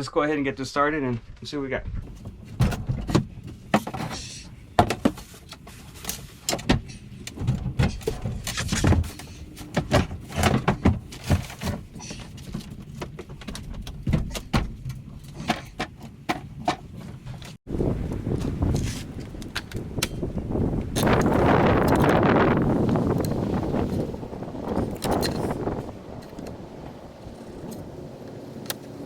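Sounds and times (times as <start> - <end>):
wooden and metal parts clunking: 2.0 - 17.6, 23.2 - 26.6.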